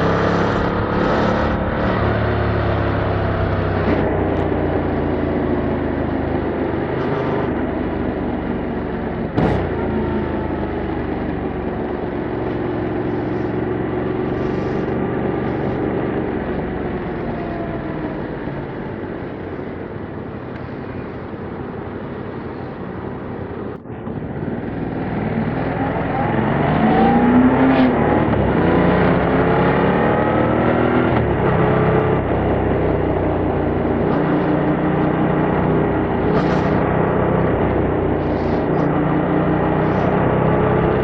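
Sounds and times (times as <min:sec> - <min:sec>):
motorcycle engine accelerating: 0:00.0 - 0:41.0.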